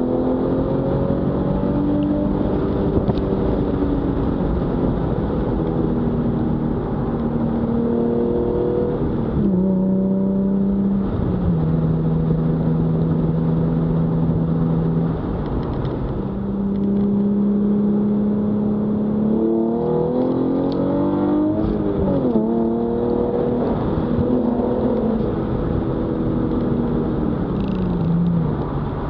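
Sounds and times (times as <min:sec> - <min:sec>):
car engine revving: 0:00.0 - 0:29.0.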